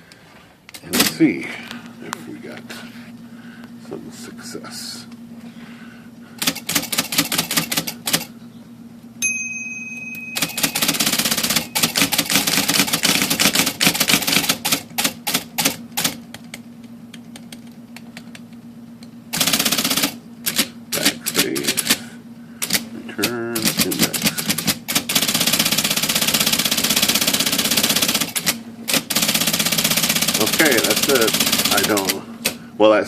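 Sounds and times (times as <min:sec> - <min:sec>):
electric typewriter motor hum: 0:00.1 - 0:08.6, 0:10.2 - 0:32.8
rapid mechanical clicking: 0:06.4 - 0:08.3, 0:10.4 - 0:18.5, 0:19.3 - 0:22.0, 0:22.6 - 0:32.6
short ringing tone: 0:09.2 - 0:12.1.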